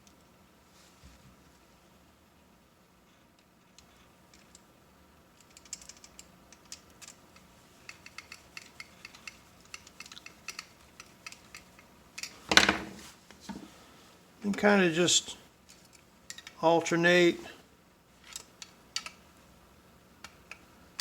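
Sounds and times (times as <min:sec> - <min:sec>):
metal clicking on metal: 0:05.4 - 0:12.4.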